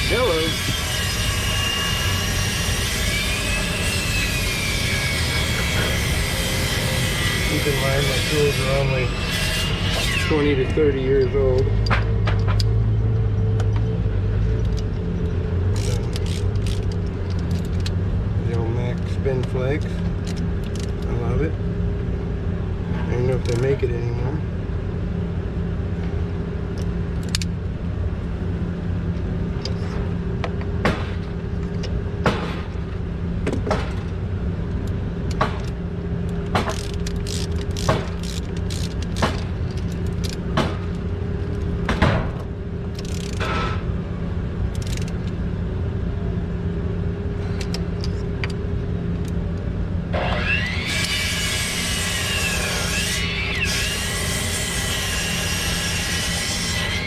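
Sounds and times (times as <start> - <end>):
wavering high-pitched whine: 0.0 - 33.4, 34.0 - 57.0
engine-like drone: 0.0 - 57.0
hand tools clicking: 15.7 - 17.9, 35.3 - 41.7, 43.0 - 43.5, 44.8 - 45.3.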